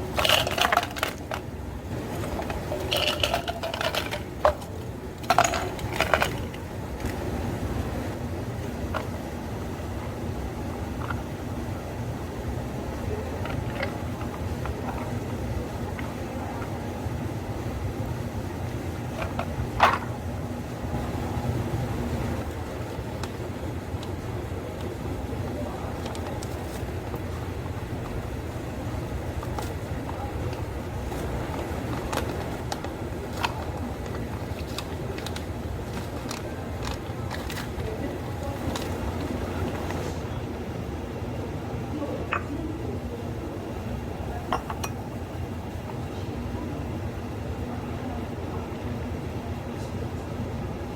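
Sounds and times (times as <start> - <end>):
low mechanical hum: 0.0 - 50.9
cups and utensils clicking: 0.1 - 1.5, 2.1 - 7.2, 19.1 - 20.2, 42.3 - 42.6, 44.4 - 45.1.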